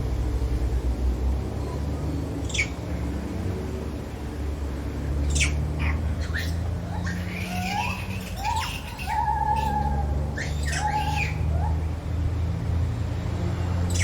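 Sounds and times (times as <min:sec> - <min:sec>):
gibbon calling: 0:06.2 - 0:11.9.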